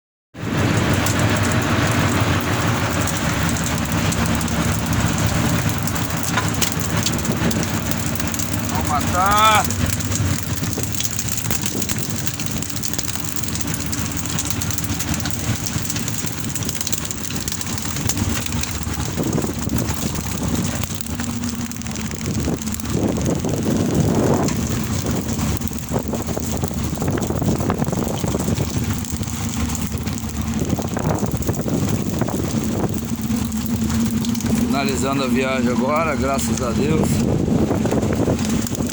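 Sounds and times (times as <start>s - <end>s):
boat engine running: 0.3s - 38.9s.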